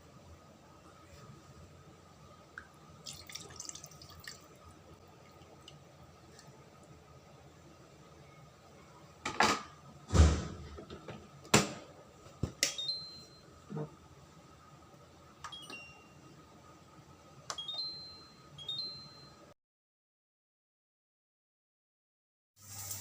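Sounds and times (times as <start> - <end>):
high chime-like pings: 12.7 - 13.4, 15.5 - 16.2, 17.5 - 19.4.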